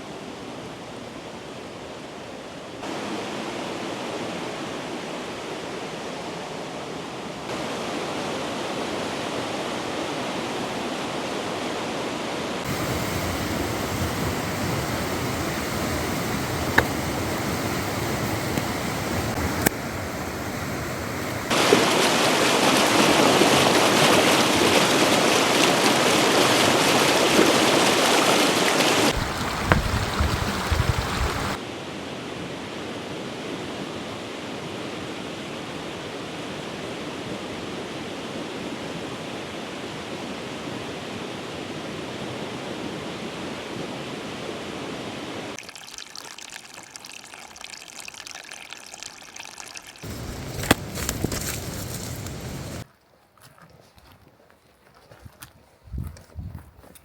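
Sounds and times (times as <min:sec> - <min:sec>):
stream water rushing: 0:07.5 - 0:31.6, 0:45.6 - 0:52.8.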